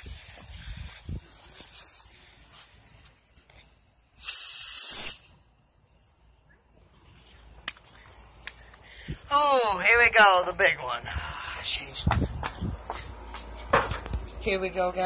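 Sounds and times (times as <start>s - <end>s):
spinning firework hissing and whistling: 4.2s - 5.6s.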